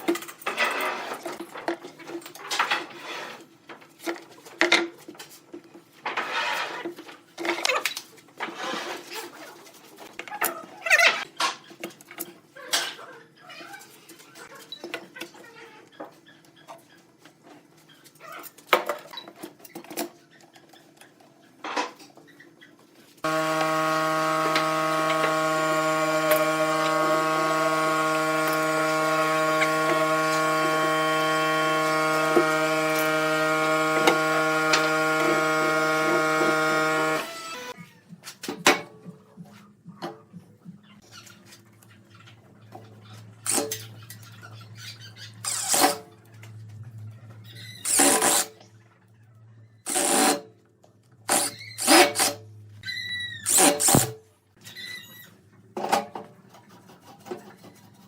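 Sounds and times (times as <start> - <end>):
workshop knocks clicks and scrapes: 0.0 - 13.0, 38.2 - 39.2, 55.7 - 58.0
lathe motor humming: 23.2 - 37.8.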